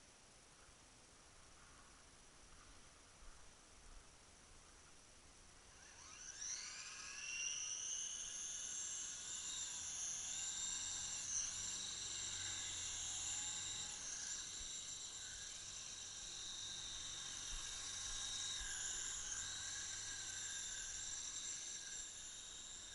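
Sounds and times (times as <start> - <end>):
remote-control helicopter whine: 5.6 - 22.9.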